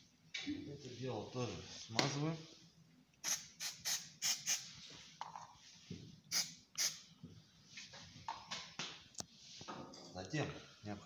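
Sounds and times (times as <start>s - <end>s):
sharp hissy strokes: 3.2s - 4.8s, 6.3s - 7.0s.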